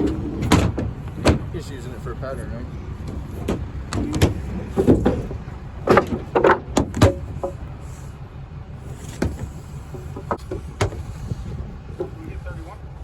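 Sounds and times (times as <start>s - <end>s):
wooden boards knocking: 0.0s - 1.5s, 3.0s - 7.6s, 9.1s - 11.1s, 11.9s - 12.4s
low steady rumble: 0.0s - 13.0s.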